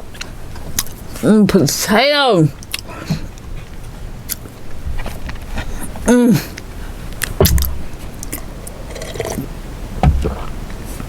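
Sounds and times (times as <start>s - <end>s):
chewing food: 0.0s - 1.2s, 2.6s - 6.0s.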